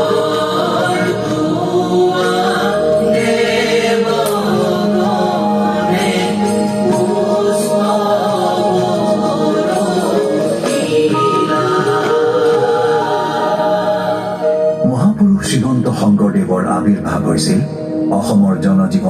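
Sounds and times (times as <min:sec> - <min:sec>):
choir singing long held notes: 0:00.0 - 0:15.0
soundtrack music: 0:00.0 - 0:19.0.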